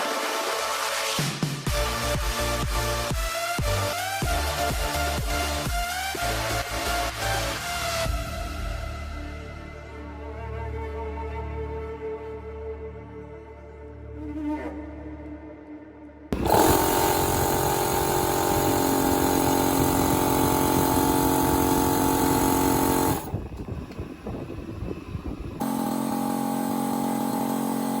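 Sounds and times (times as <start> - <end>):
air compressor humming: 16.4 - 28.0.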